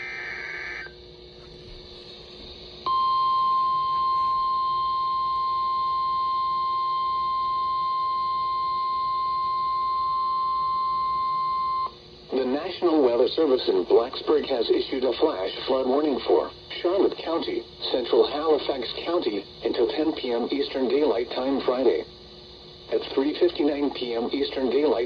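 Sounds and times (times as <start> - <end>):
steady warning alarm tone: 0.0 - 12.0
radio hiss: 12.3 - 22.2, 22.8 - 25.0.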